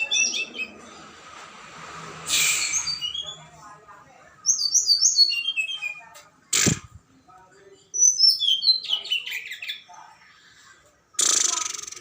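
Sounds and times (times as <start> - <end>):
songbird chirping: 0.0 - 1.3, 2.4 - 10.6
harsh noisy burst: 6.5 - 7.0.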